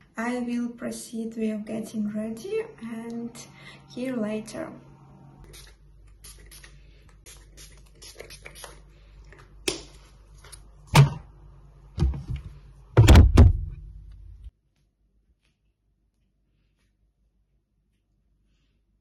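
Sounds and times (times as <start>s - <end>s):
low room hum: 0.0s - 19.0s
heavy knocks and thuds: 12.0s - 13.8s.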